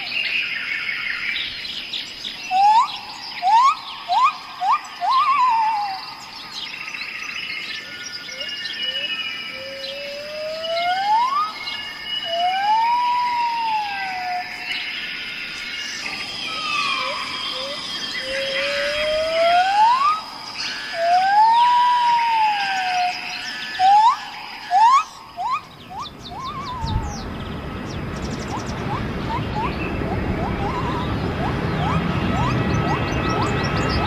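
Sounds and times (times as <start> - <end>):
high bird chirps: 1.5 - 34.0
bird whistled phrase: 2.5 - 6.0, 23.8 - 27.2, 28.5 - 29.8
short rising bird notes: 15.7 - 34.0
steady high tone: 15.9 - 27.4, 28.5 - 34.0.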